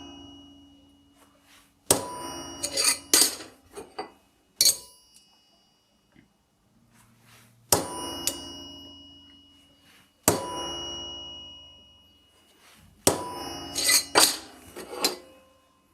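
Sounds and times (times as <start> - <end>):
hammer striking metal punch: 1.8 - 5.2, 7.7 - 9.4, 10.2 - 11.6, 13.0 - 15.4.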